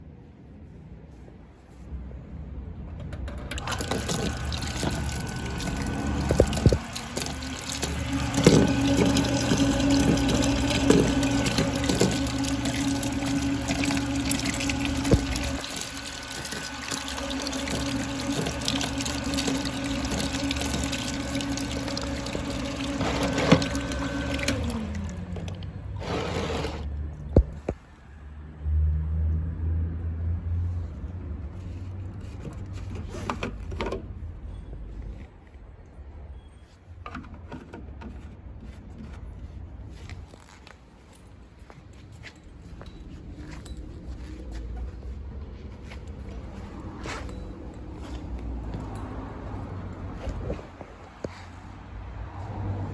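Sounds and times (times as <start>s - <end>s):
water cooler pump and fan humming: 2.8s - 27.8s, 31.6s - 35.6s, 36.7s - 51.8s
coolant circulating: 3.3s - 27.6s, 45.7s - 51.3s
motor winding down: 3.5s - 26.9s.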